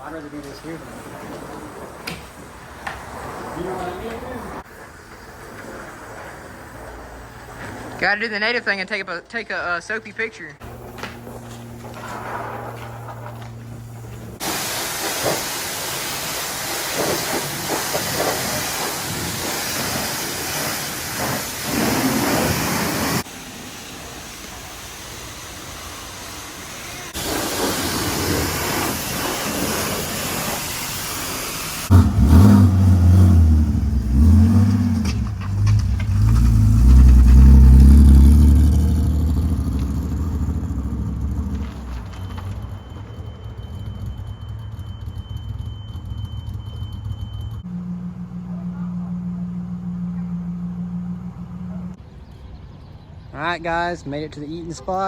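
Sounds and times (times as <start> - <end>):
pressure washer spray hissing: 14.1 - 32.4
car engine revving: 31.8 - 47.6.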